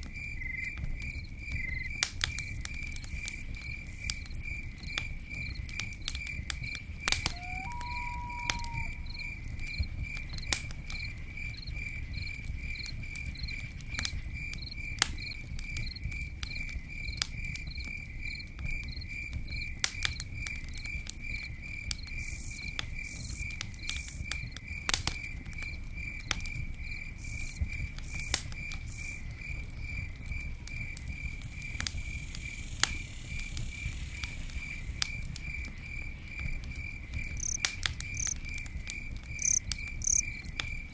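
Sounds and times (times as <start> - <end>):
campfire crackling: 0.0 - 40.9
cricket chirping: 0.0 - 40.9.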